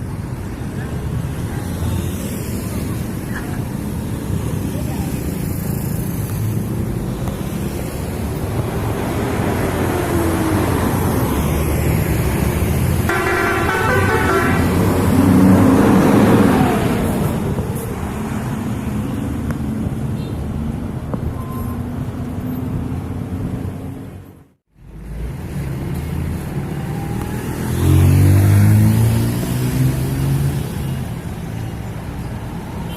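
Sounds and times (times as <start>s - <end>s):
road traffic: 0.0s - 32.9s
bus engine passing: 2.2s - 19.9s
multi-tone bus horn tune: 13.1s - 16.0s.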